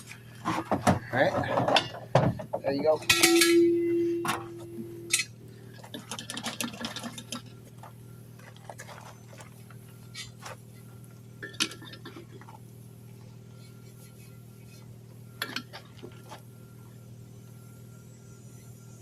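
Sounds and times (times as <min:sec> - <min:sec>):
steady low hum: 0:00.0 - 0:19.0
metal clinks and clanks: 0:03.0 - 0:07.5.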